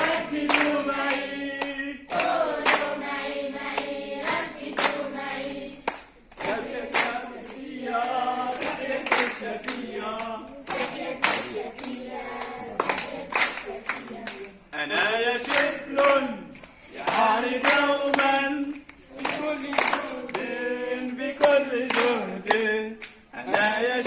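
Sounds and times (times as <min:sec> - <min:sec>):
children singing in a group: 0:00.0 - 0:14.7
hand claps: 0:00.0 - 0:24.0.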